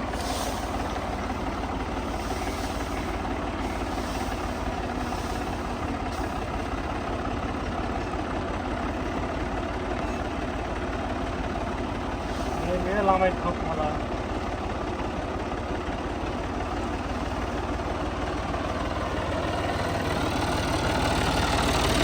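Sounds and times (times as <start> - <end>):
tractor diesel engine running: 0.0 - 22.0.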